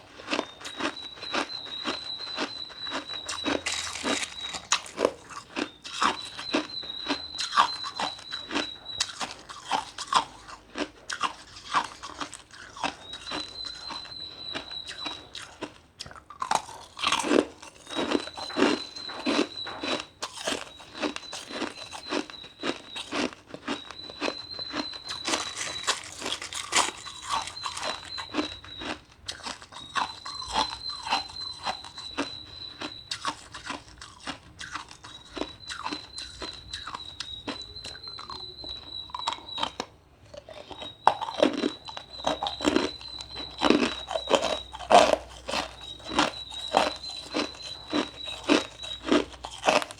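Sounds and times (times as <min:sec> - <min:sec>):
ice crunching while chewed: 0:00.0 - 0:49.9
high-pitched tone: 0:01.6 - 0:05.0.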